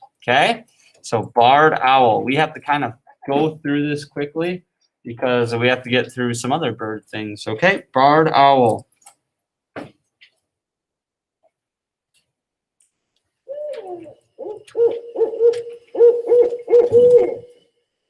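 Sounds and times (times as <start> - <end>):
owl hooting: 13.5 - 17.6.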